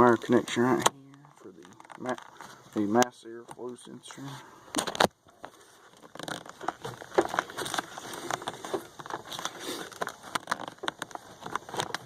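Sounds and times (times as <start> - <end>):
plastic clicks and knocks: 4.7 - 12.0.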